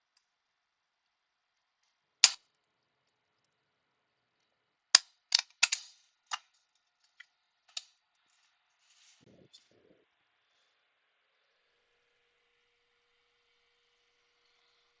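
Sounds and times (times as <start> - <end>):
small tools clicking and tapping: 1.8 - 3.6, 4.4 - 8.4.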